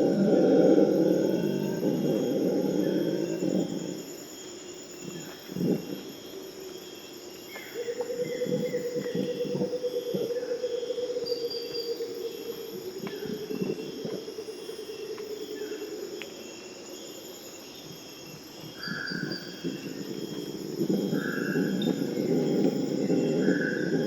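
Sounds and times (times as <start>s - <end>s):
howler monkeys howling: 0.0s - 4.2s, 7.8s - 13.8s, 18.8s - 24.0s
rainforest insects shrilling: 0.0s - 24.0s.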